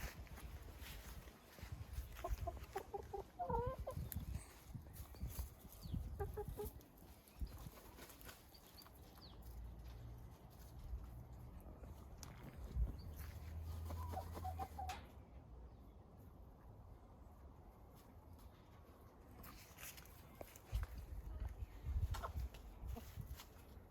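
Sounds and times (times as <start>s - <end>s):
chickens clucking: 0.4s - 9.9s, 11.6s - 15.4s, 18.8s - 23.8s.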